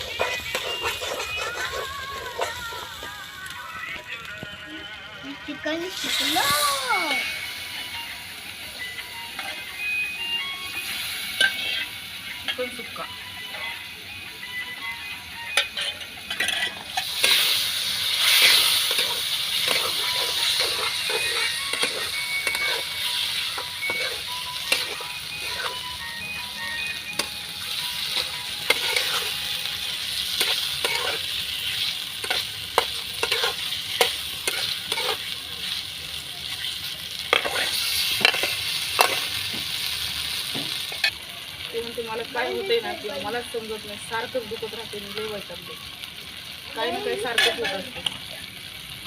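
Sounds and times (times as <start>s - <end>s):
spatula scraping and clinking: 0.0s - 2.8s, 15.6s - 17.5s, 18.2s - 25.8s, 28.2s - 29.4s, 30.4s - 31.3s, 32.2s - 35.2s
chicken sizzling in a pan: 0.0s - 49.0s.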